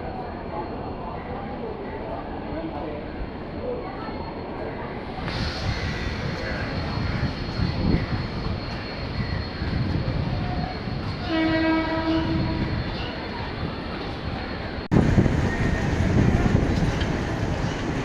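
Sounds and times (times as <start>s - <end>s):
train rumbling on rails: 0.0s - 18.0s
locomotive horn: 11.2s - 12.8s.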